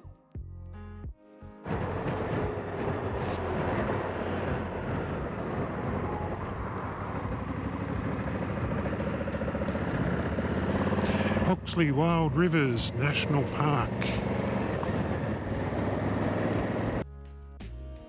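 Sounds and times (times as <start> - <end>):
road noise: 1.6 - 17.0
motorcycle engine running: 1.7 - 17.0.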